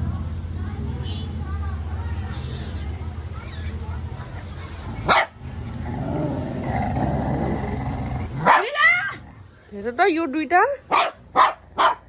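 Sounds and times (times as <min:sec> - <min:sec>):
dog yelping: 0:02.3 - 0:02.8, 0:03.4 - 0:03.7
dogs yapping: 0:03.4 - 0:03.7.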